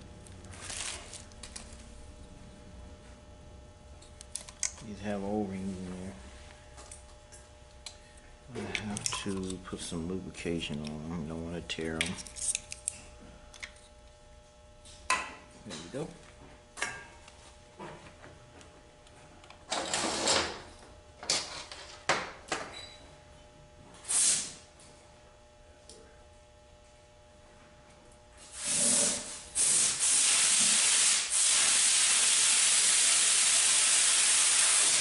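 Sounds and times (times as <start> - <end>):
nozzle hissing gas: 24.1 - 24.6, 28.5 - 35.0.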